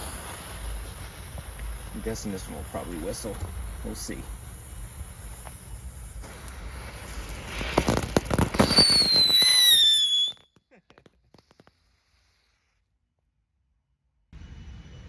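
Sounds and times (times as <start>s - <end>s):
firework whistle: 0.0s - 10.6s
firework hissing and sputtering: 0.0s - 12.7s.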